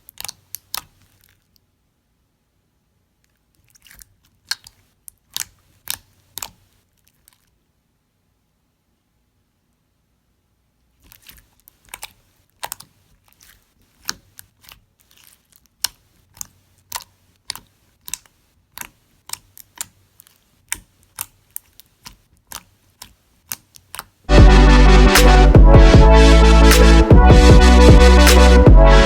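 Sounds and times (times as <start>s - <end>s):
slime squished by hand: 11.0s - 22.7s.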